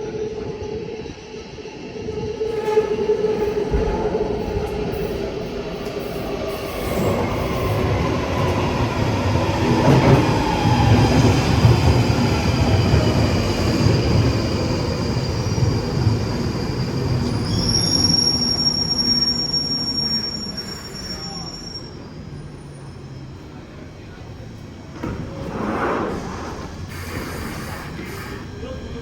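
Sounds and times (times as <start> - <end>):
train wheels rumbling on track: 0.4 - 29.0
high wheel squeal: 13.9 - 23.2.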